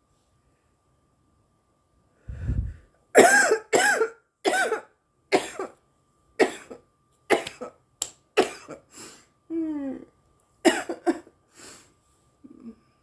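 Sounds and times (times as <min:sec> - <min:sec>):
low muffled rumble: 0:02.3 - 0:02.9
woman coughing harshly: 0:03.2 - 0:05.8, 0:06.4 - 0:07.8, 0:08.4 - 0:08.9, 0:10.6 - 0:11.3.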